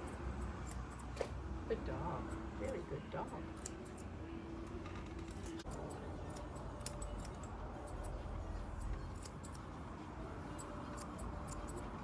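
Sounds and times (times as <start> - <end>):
metallic clicks and snips: 5.2 - 8.2.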